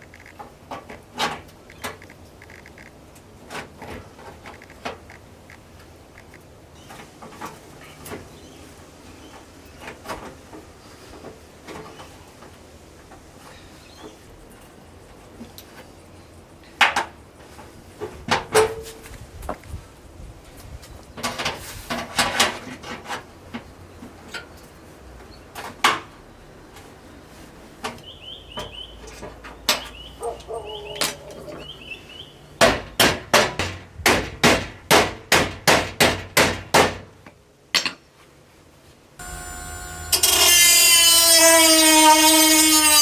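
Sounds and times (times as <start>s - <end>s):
power tool running loudly: 39.2s - 43.0s.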